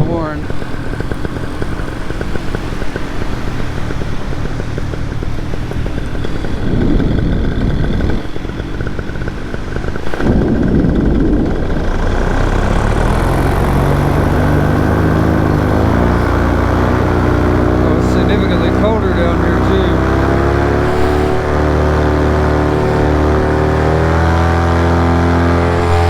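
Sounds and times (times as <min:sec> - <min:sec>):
paramotor engine running: 0:00.0 - 0:26.0
wind buffeting microphone: 0:00.0 - 0:26.0.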